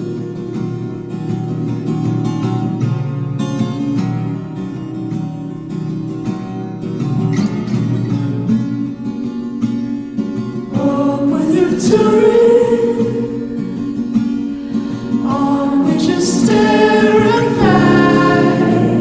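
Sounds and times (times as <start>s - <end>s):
acoustic guitar: 0.0s - 19.0s
person singing: 10.8s - 13.7s, 15.1s - 19.0s.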